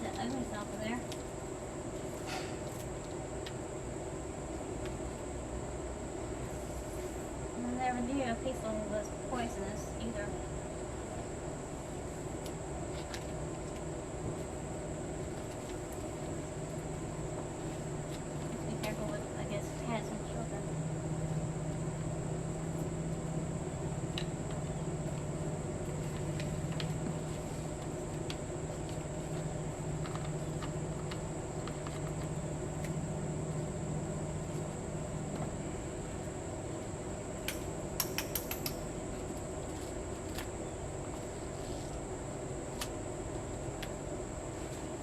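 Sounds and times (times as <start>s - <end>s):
constant high whine: 0.0s - 45.0s
low mechanical hum: 0.0s - 45.0s
steady background hiss: 0.0s - 45.0s.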